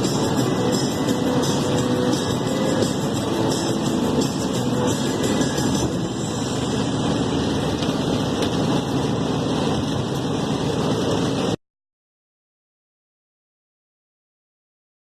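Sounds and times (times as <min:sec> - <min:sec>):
car engine and road noise: 0:00.0 - 0:11.6.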